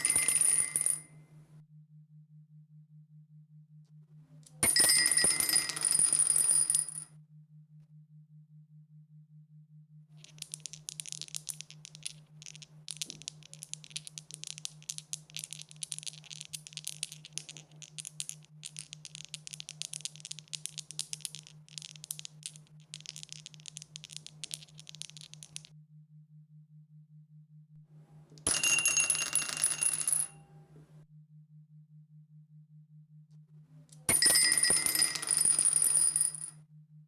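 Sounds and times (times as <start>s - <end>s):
dice rattling: 10.2s - 25.7s.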